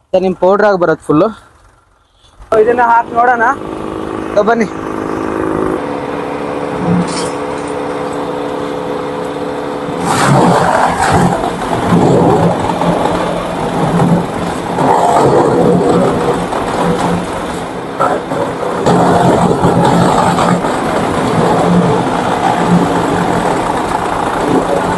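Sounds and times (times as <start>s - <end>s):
wood chipper engine running: 1.4s - 24.9s
crunching and grinding shredding: 9.9s - 24.9s.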